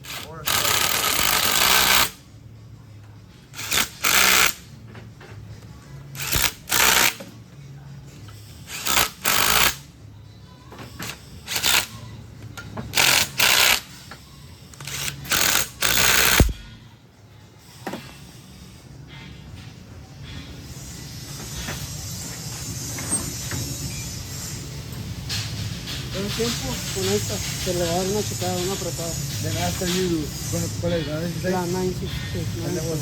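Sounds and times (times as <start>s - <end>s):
power drill driving bolts: 3.6s - 4.6s, 14.8s - 16.5s.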